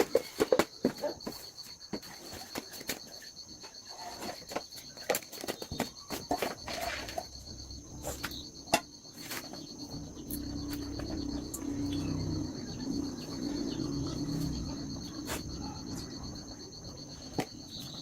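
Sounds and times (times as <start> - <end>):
insects trilling: 0.0 - 18.0.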